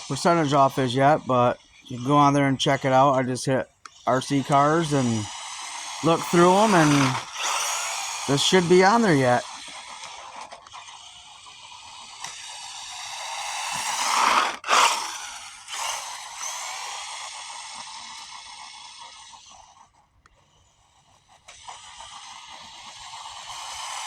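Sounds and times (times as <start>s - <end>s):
toy car electric motor whining: 0.0s - 24.0s.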